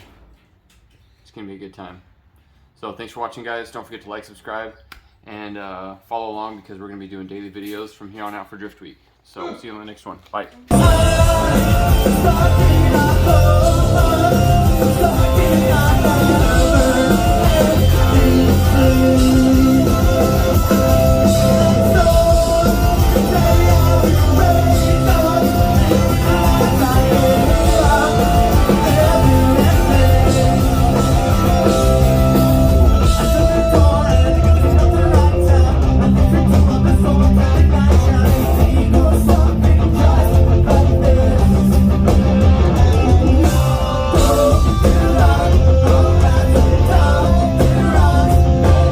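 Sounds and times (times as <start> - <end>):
rock music with singing: 10.7 - 48.9.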